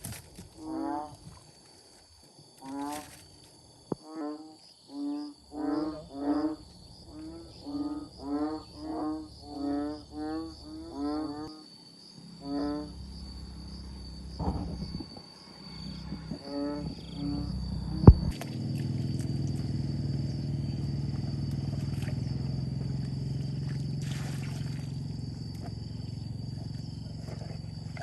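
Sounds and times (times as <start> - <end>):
low hum: 12.2 - 28.0
steady high whine: 12.9 - 23.2.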